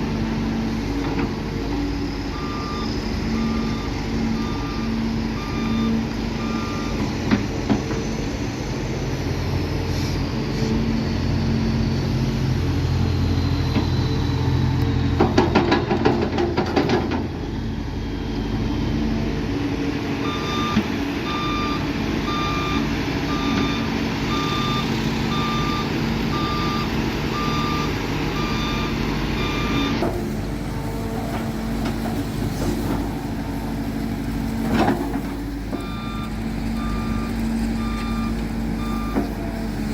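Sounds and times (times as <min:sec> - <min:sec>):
heavy machinery diesel engine: 0:00.0 - 0:39.9
reversing alarm beeps: 0:02.3 - 0:07.1, 0:20.2 - 0:30.0, 0:35.7 - 0:39.9.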